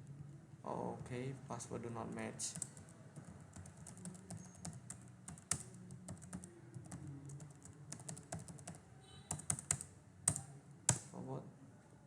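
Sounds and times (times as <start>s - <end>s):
keyboard typing: 2.0s - 11.1s.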